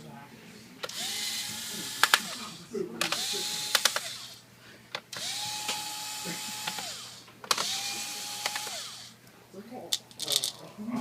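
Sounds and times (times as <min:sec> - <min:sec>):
cordless drill whining: 0:00.9 - 0:04.4, 0:05.1 - 0:09.2.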